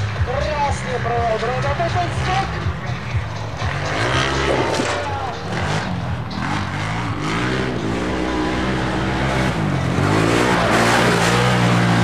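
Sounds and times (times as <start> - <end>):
race vehicle engine revving: 0.0 - 12.0.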